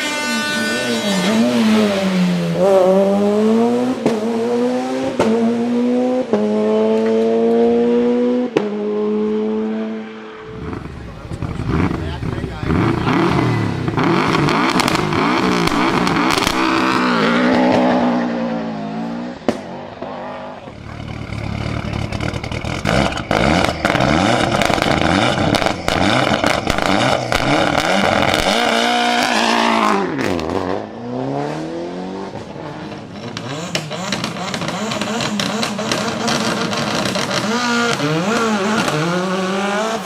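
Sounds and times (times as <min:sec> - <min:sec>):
rally car engine revving: 0:00.0 - 0:40.0
exhaust cracks: 0:10.5 - 0:17.9, 0:20.7 - 0:30.6, 0:32.4 - 0:39.4.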